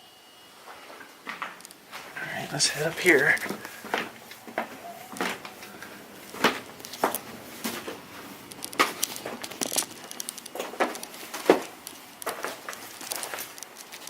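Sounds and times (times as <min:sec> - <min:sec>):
footsteps climbing stairs: 0:01.3 - 0:14.0.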